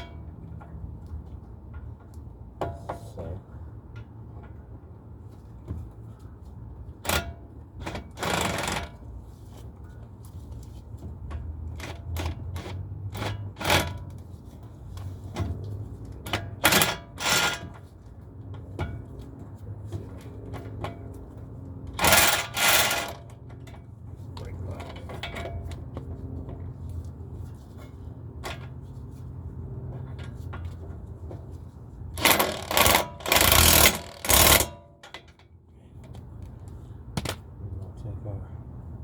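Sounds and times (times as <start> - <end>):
rattling bursts: 21.9 - 23.6, 32.1 - 35.2
metal tools clicking and clanking: 21.9 - 23.8, 32.2 - 35.6.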